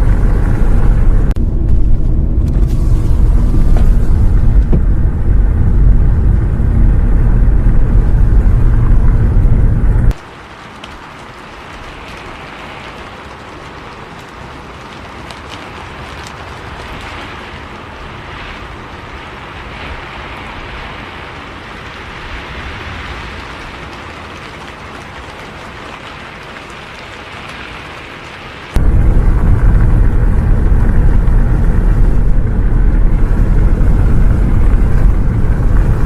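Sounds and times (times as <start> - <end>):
faint low vehicle rumble: 0.0 - 10.2, 28.8 - 36.0
rain hiss: 0.0 - 36.0
raindrop ticks: 0.0 - 36.0.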